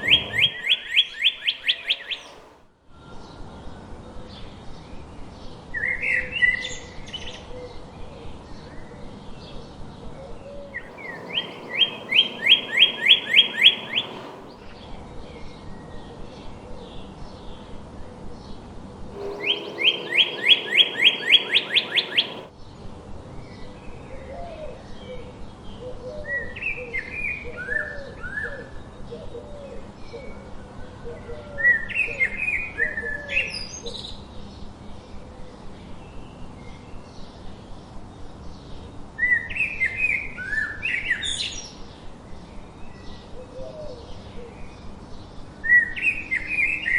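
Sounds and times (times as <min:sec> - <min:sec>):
bird singing slurred whistles: 0:00.0 - 0:02.5, 0:10.8 - 0:14.6, 0:19.2 - 0:22.5
faint bird chirps: 0:00.0 - 0:02.5, 0:10.8 - 0:14.6, 0:19.2 - 0:22.5
soft low bird calls: 0:00.0 - 0:02.5, 0:10.8 - 0:14.6, 0:19.2 - 0:22.5.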